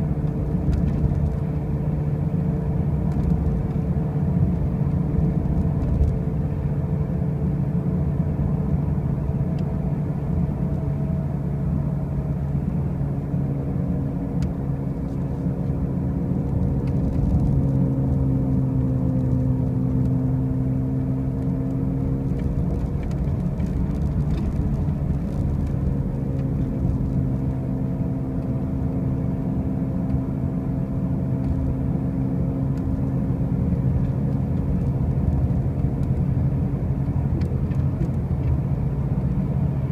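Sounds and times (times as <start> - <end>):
car droning hum while driving: 0.0 - 39.9.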